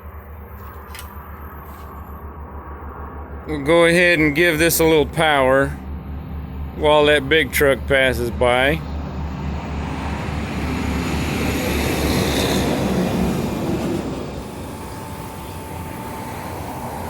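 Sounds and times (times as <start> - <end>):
steady low hum: 0.0 - 10.8
truck passing by: 0.0 - 17.0.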